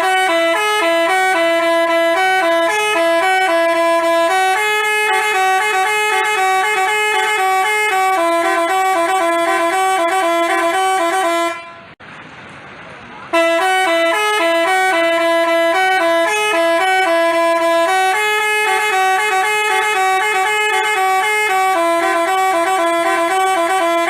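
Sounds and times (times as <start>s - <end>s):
musical bus horn playing a tune: 0.0s - 12.0s, 13.3s - 24.0s.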